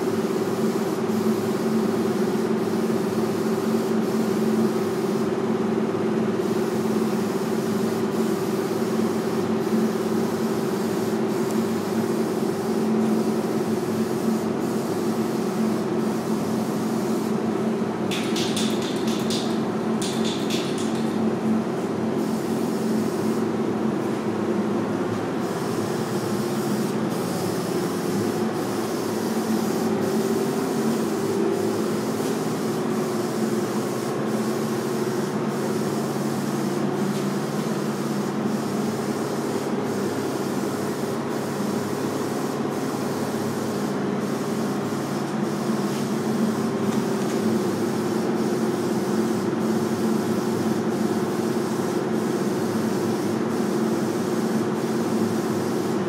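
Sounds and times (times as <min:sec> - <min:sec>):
ventilation fan humming: 0:00.0 - 0:56.0.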